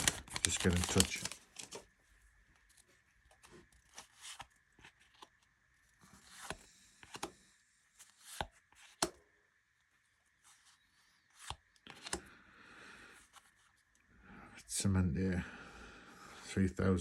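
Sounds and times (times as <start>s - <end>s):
cards sliding: 0.0s - 1.8s, 2.8s - 5.4s, 6.1s - 7.4s, 8.0s - 9.2s, 11.3s - 12.3s.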